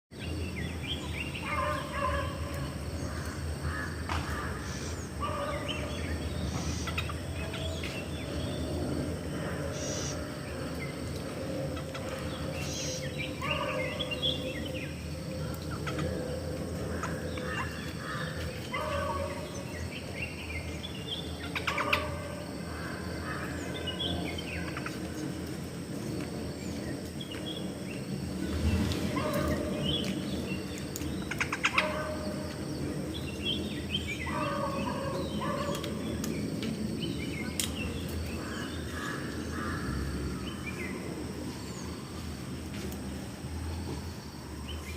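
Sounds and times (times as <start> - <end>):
parrots calling: 21.4 - 22.3, 31.3 - 32.3.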